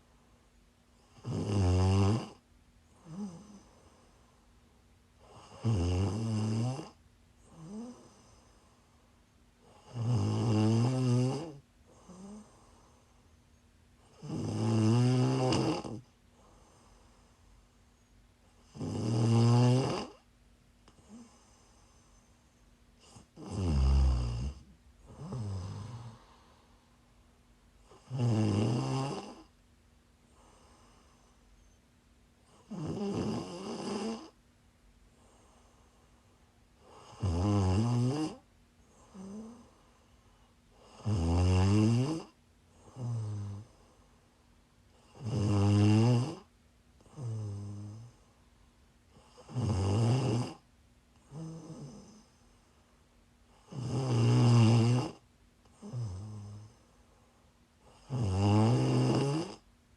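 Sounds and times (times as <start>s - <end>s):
woman snoring: 1.0s - 2.4s, 3.0s - 4.0s, 5.2s - 8.6s, 9.6s - 13.0s, 14.1s - 16.1s, 18.6s - 20.2s, 23.0s - 26.6s, 27.8s - 29.5s, 32.5s - 34.4s, 36.8s - 39.7s, 40.7s - 43.8s, 45.0s - 48.2s, 49.2s - 50.6s, 51.2s - 52.4s, 53.5s - 56.8s, 57.8s - 59.7s.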